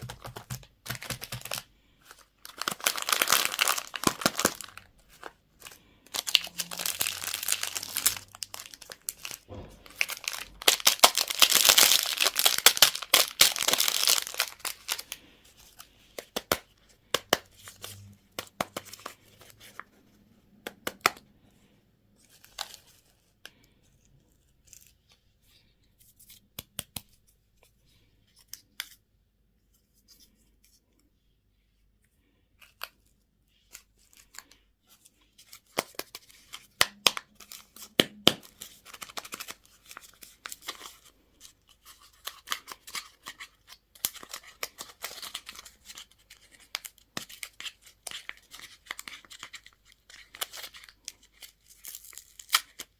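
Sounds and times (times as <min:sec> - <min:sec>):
packaging crinkling: 0:00.0 - 0:15.2.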